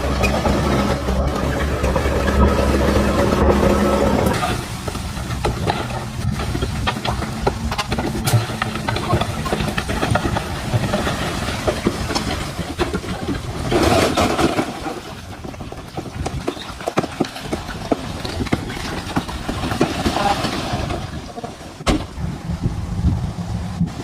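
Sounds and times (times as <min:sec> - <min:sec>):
bulldozer engine under load: 0:00.0 - 0:24.0
steel tracks clanking: 0:00.0 - 0:24.0
stones knocking: 0:00.3 - 0:22.2.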